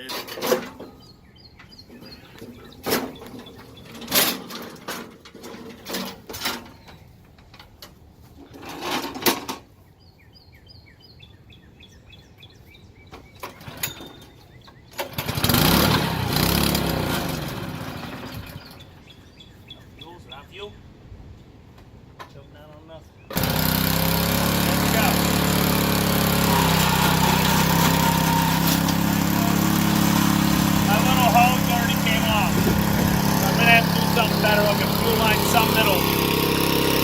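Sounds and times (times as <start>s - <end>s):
birds chirping: 0.0s - 7.6s, 9.7s - 21.0s, 22.2s - 37.0s
recoil starter cord pulls: 2.0s - 7.0s, 15.0s - 18.7s, 23.3s - 37.0s
small engine running: 15.0s - 18.8s, 23.3s - 37.0s.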